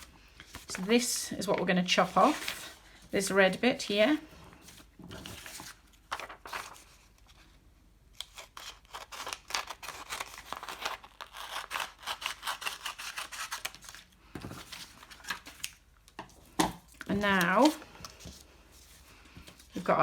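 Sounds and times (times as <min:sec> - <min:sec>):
scissors snipping paper: 0:08.2 - 0:14.0.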